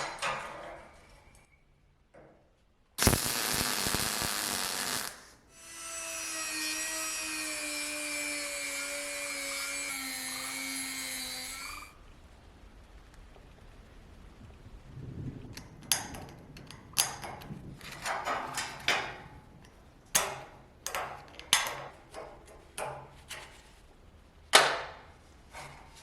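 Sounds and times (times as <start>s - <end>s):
power tool grinding metal: 3.0s - 11.9s.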